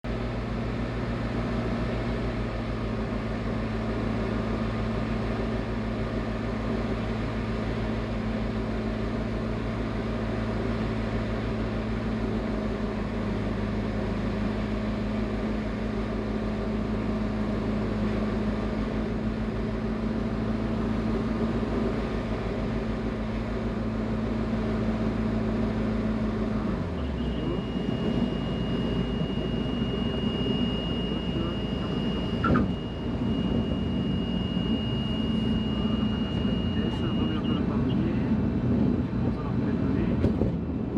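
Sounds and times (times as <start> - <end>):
light aircraft engine running: 0.0 - 40.9
high-pitched steady tone: 26.8 - 37.8.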